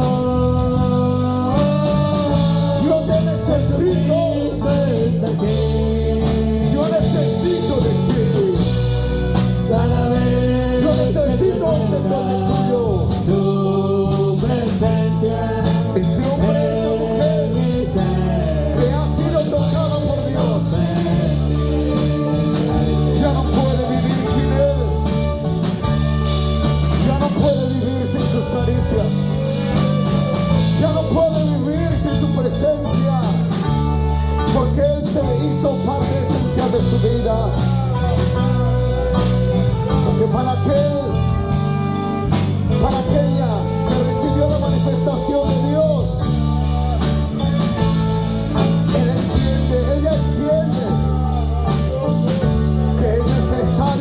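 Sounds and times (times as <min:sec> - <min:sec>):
bass notes: 0:00.0 - 0:54.0
guitar: 0:00.0 - 0:54.0
person singing: 0:00.0 - 0:54.0
steady drum beat: 0:00.0 - 0:54.0.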